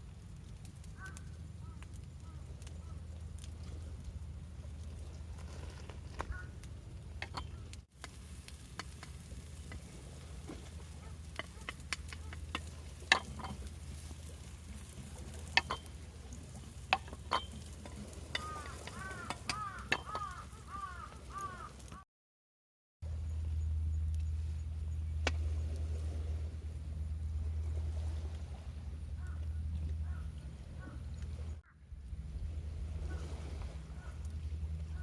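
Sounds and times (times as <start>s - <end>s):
utensil clicks and taps: 11.3s - 13.6s.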